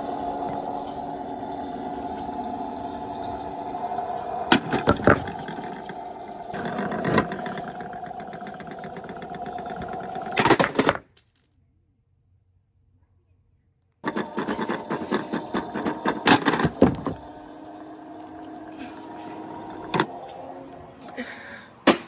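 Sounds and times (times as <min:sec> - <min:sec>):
small electric motor whine: 0:00.0 - 0:10.4, 0:14.0 - 0:21.9
knocks and rattles: 0:01.8 - 0:11.3, 0:14.0 - 0:20.2.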